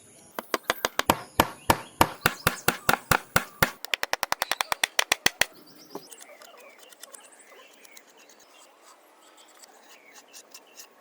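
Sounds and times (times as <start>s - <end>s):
sharp knocks: 0.4s - 5.5s.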